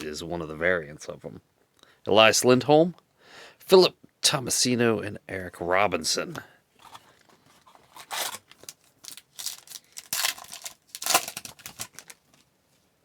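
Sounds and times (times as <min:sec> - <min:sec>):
cards flipping and rustling: 0:06.8 - 0:12.5.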